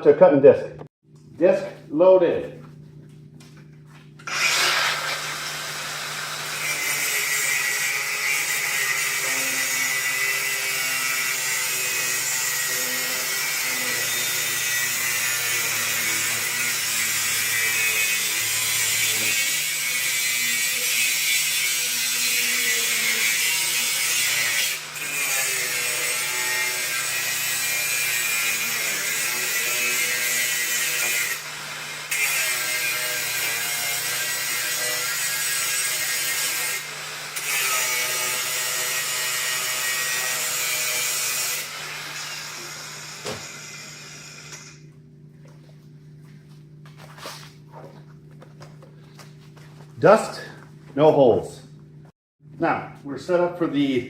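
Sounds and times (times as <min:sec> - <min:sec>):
angle grinder cutting: 0:04.2 - 0:44.9.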